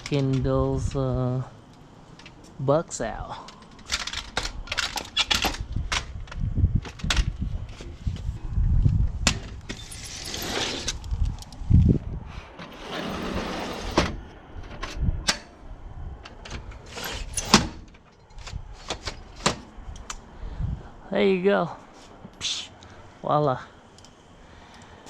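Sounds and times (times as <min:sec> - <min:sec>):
screen door frame scraping: 0:09.4 - 0:11.1, 0:12.6 - 0:15.6, 0:16.2 - 0:19.8.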